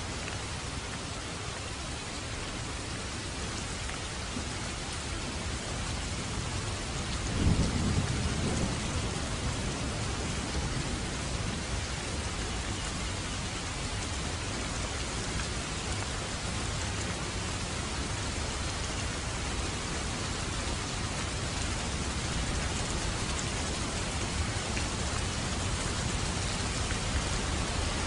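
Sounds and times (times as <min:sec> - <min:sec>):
steady rain falling: 0:00.0 - 0:28.0
thunder rumbling: 0:07.2 - 0:10.6.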